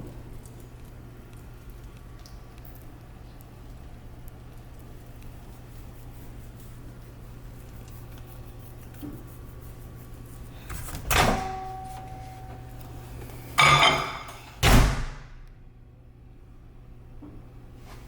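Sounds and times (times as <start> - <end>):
sharp metal clank: 13.6 - 14.7
heavy door thud: 13.8 - 15.4.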